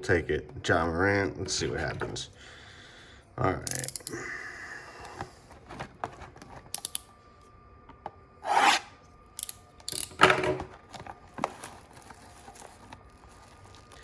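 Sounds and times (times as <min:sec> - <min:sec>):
cardboard box scraping and rubbing: 0:08.4 - 0:08.9.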